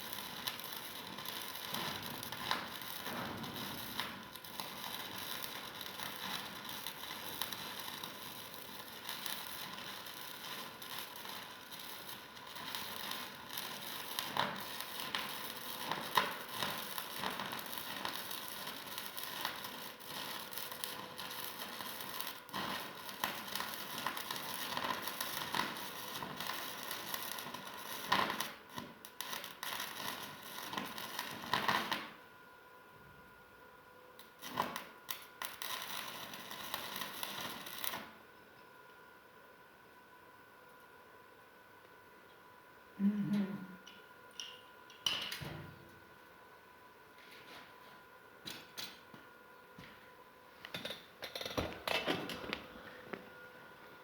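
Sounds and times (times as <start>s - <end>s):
electric arc welding crackle: 0.0s - 32.2s, 34.2s - 38.2s
sharp welding pops: 0.0s - 32.2s, 34.2s - 38.2s.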